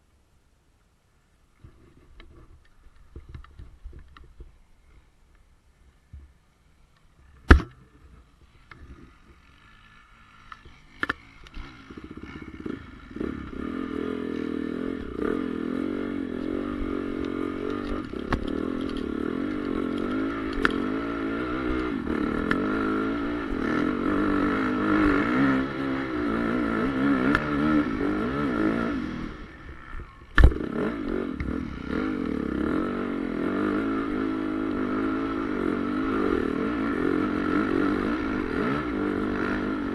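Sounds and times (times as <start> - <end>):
motocross bike engine revving: 8.5 - 39.9.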